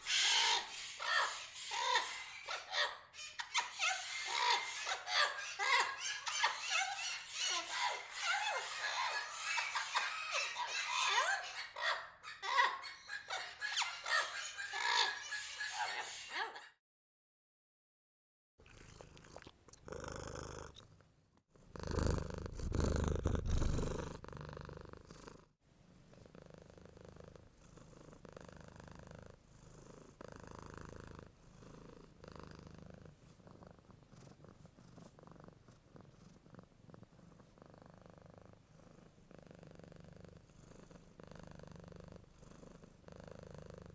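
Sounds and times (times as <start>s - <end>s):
cat purring: 18.7s - 43.9s.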